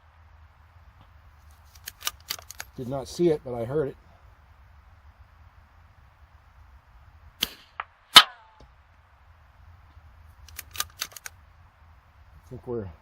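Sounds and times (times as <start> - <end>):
metallic clicks: 1.6 - 2.8, 10.4 - 11.4
rifle shot: 7.4 - 8.6.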